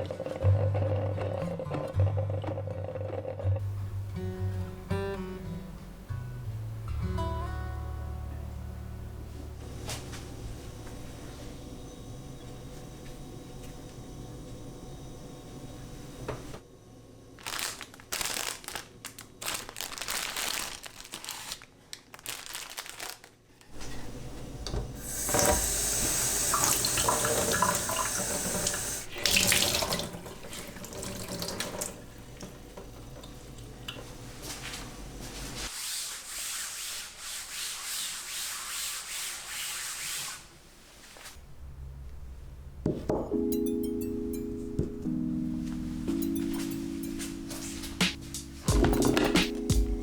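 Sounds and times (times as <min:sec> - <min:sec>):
tap running into sink: 0:24.6 - 0:33.3
washing and rubbing: 0:25.0 - 0:41.2
handling noises: 0:45.6 - 0:49.9.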